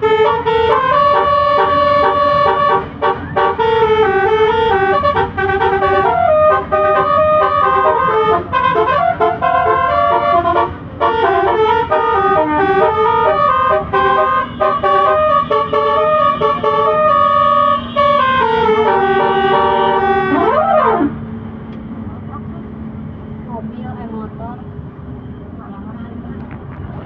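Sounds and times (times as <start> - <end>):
multi-tone bus air horns melody: 0.0 - 21.4.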